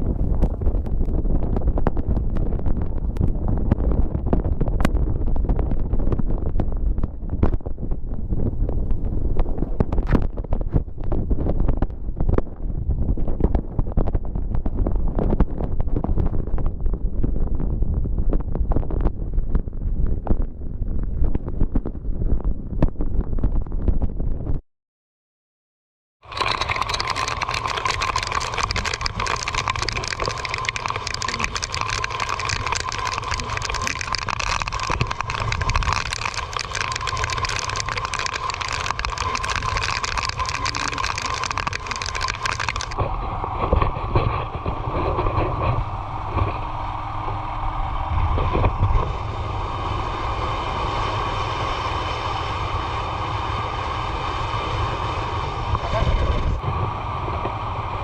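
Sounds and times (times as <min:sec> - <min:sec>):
wind buffeting microphone: 0:00.0 - 0:24.6.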